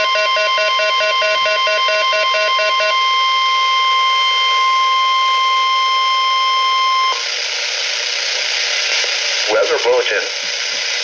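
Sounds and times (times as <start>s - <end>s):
rapid low beeping: 0.0s - 7.4s
steady loud alarm tone: 0.0s - 8.0s.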